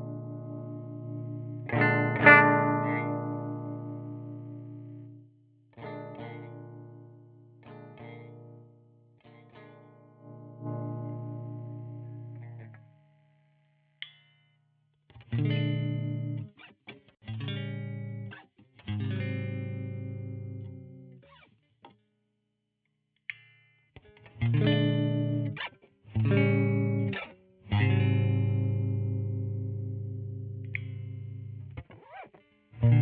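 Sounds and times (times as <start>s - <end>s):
electric guitar ringing chords: 0.0s - 5.2s, 9.5s - 13.2s, 17.4s - 21.2s, 24.4s - 32.2s, 32.8s - 33.0s.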